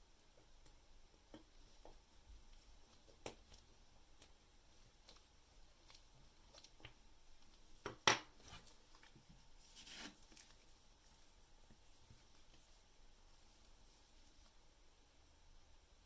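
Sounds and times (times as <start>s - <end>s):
soft scrape: 9.6s - 11.2s.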